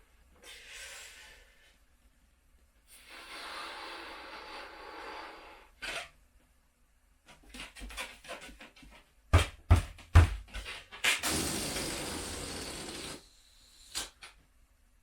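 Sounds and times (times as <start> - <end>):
blowing air into balloon: 2.9 - 5.8, 11.1 - 14.2.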